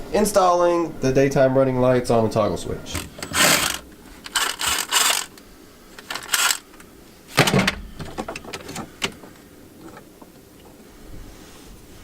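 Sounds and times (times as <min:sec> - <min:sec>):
rustling and scraping: 0:02.9 - 0:12.0.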